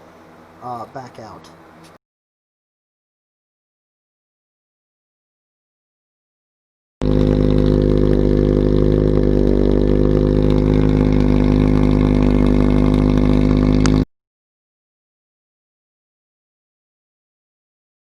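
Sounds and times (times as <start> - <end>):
car engine idling: 7.0 - 14.0.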